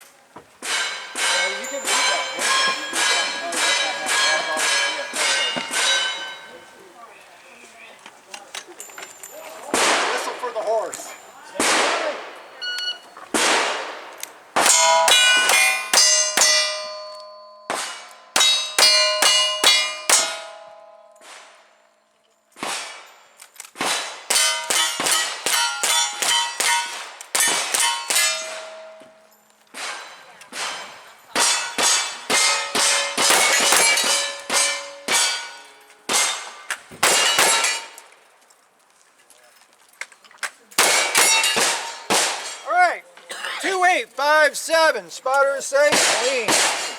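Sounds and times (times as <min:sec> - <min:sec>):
steel target clanging: 0:00.6 - 0:06.8, 0:12.9 - 0:21.8, 0:23.9 - 0:38.1, 0:40.8 - 0:43.0, 0:45.4 - 0:46.9
gunshots: 0:09.6 - 0:10.8, 0:11.5 - 0:12.6, 0:13.3 - 0:16.5, 0:22.6 - 0:23.1, 0:23.7 - 0:28.6, 0:29.7 - 0:35.4, 0:36.1 - 0:38.0, 0:40.8 - 0:42.6, 0:45.8 - 0:46.9.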